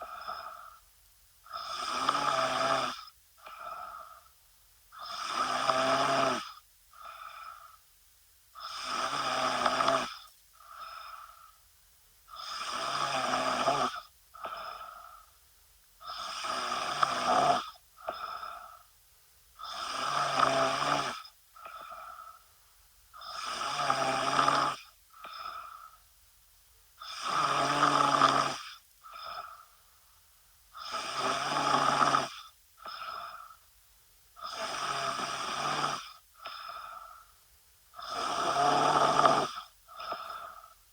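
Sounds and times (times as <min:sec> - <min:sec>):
woman snoring: 0:01.4 - 0:04.3, 0:05.0 - 0:07.8, 0:08.6 - 0:11.5, 0:12.3 - 0:15.4, 0:16.0 - 0:18.9, 0:19.6 - 0:22.4, 0:23.2 - 0:26.0, 0:27.0 - 0:29.7, 0:30.7 - 0:33.6, 0:34.4 - 0:37.3, 0:38.0 - 0:40.8.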